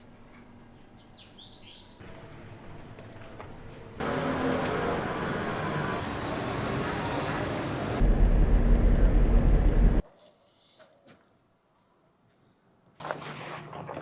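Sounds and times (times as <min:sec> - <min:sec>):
traffic rushing: 0:03.9 - 0:10.0
heavy deep rumble: 0:08.0 - 0:10.0.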